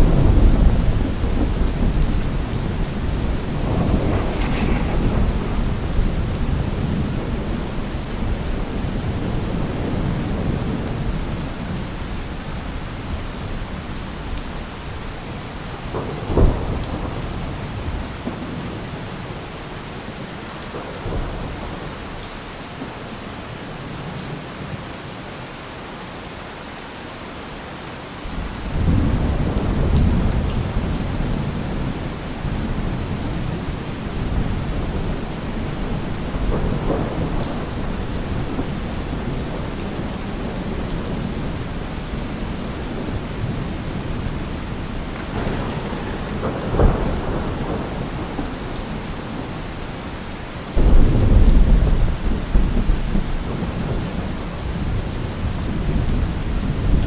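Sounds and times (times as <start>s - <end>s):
thunder crack: 0.0s - 10.6s, 32.5s - 41.7s, 45.1s - 49.6s, 50.8s - 54.0s
thunder rumbling: 0.0s - 14.2s, 14.8s - 19.2s, 28.3s - 57.0s
heavy rain: 0.0s - 57.0s.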